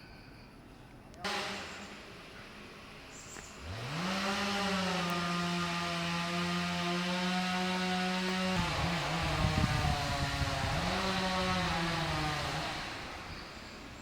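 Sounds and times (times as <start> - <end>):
chainsaw revving and cutting wood: 1.2 - 13.7.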